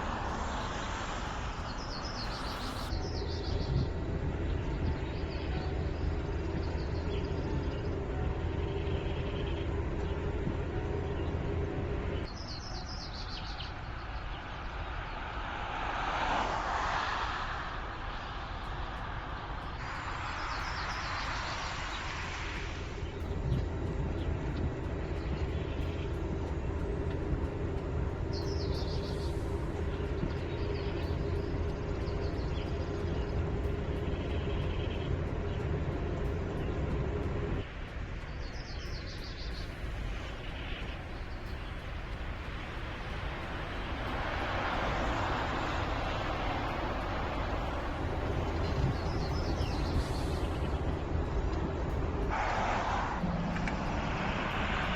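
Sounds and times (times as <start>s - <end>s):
tyre and road noise: 13.4s - 54.9s
birds chirping: 19.8s - 52.2s.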